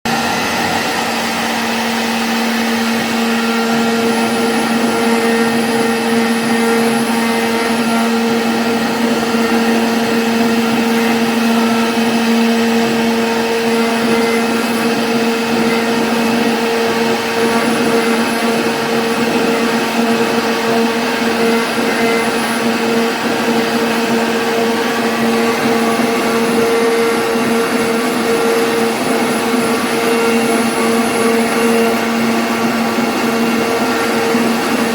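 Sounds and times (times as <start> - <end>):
router spindle whining: 0.1 - 34.9.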